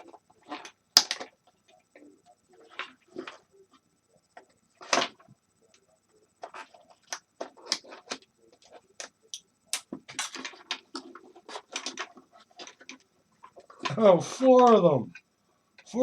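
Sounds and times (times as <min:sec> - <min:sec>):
plastic parts clicking and knocking: 0:00.0 - 0:01.5, 0:06.4 - 0:14.0.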